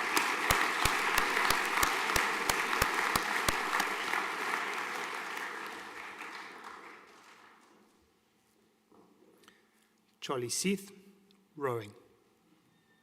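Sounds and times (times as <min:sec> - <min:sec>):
rhythmic sharp claps: 0:00.0 - 0:07.7
audience applause: 0:00.0 - 0:07.8.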